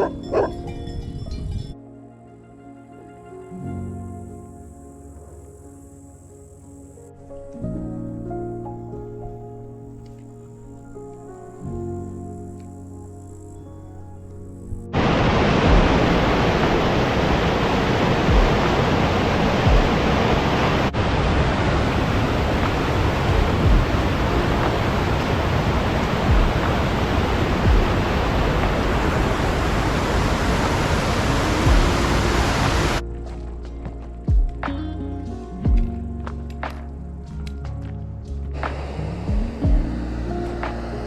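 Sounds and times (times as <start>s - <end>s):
running water rushing: 14.9s - 33.0s, 38.6s - 41.0s
faint low thumps: 23.3s - 25.0s, 25.8s - 28.8s, 39.3s - 40.9s.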